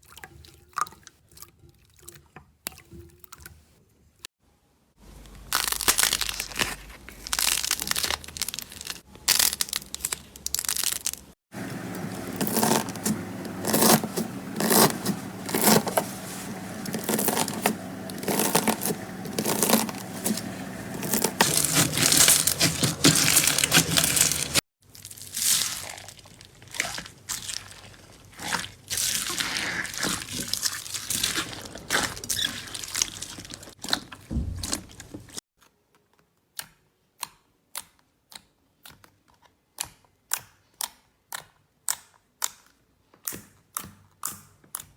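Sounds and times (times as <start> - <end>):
slime crackling and popping: 5.5 - 11.3.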